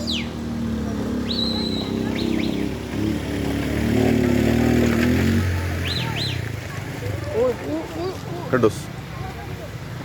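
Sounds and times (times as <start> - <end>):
birds chirping: 0.0 - 3.1, 5.6 - 6.6.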